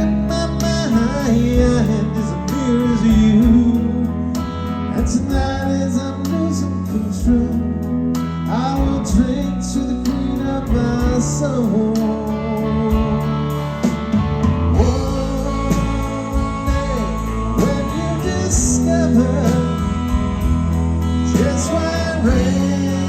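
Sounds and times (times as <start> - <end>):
bass: 0.0 - 23.0
electric guitars bending notes: 0.0 - 23.0.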